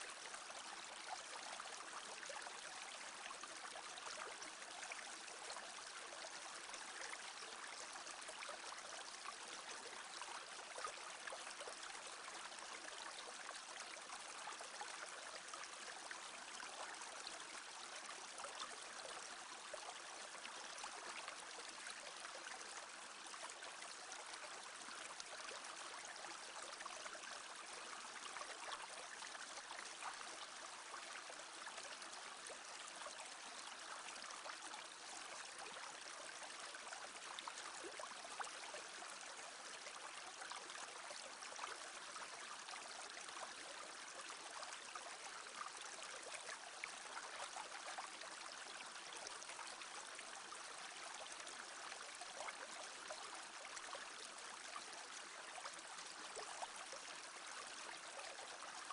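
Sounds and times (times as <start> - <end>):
brook babbling: 0.0 - 58.9.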